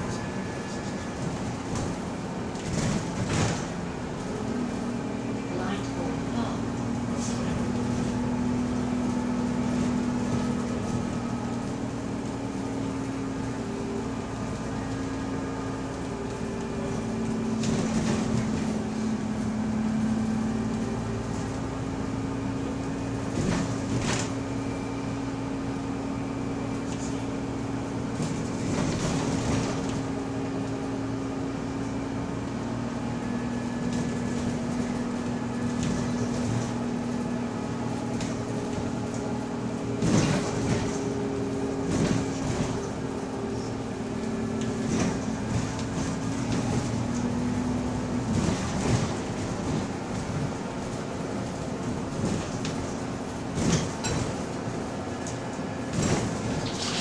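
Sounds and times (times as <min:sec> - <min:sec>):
bus drivetrain hum: 0:00.0 - 0:57.0.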